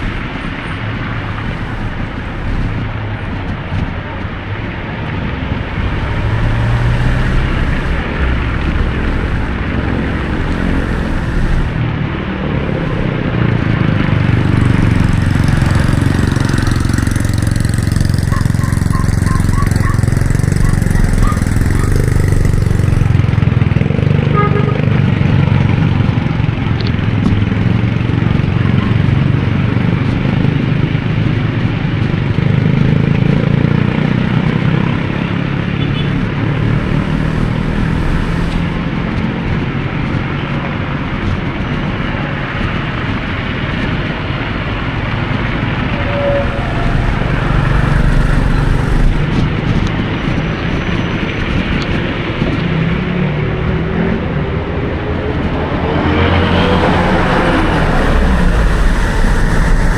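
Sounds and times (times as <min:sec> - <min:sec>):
car and motorcycle engines: 0:00.0 - 0:59.9
wind rumble on microphone: 0:00.0 - 0:59.9.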